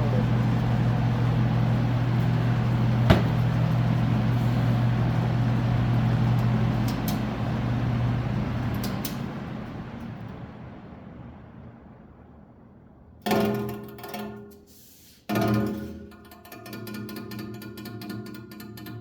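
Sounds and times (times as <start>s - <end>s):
box fan running: 0.0s - 14.5s.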